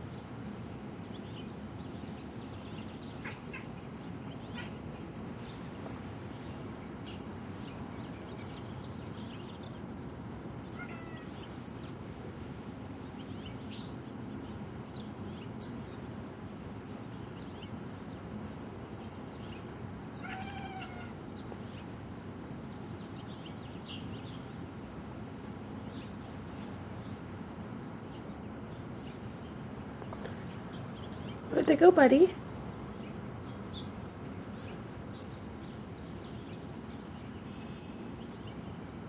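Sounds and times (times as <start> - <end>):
steady background hiss: 0.0 - 39.0
cat chirping: 10.8 - 11.3, 20.2 - 21.2.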